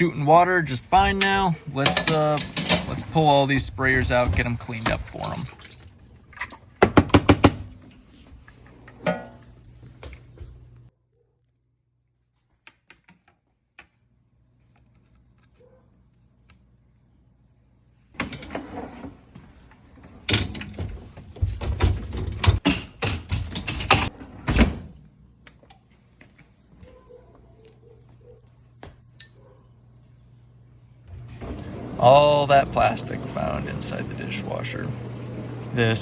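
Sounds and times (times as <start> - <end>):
dishwasher parts clattering: 0.9 - 5.3.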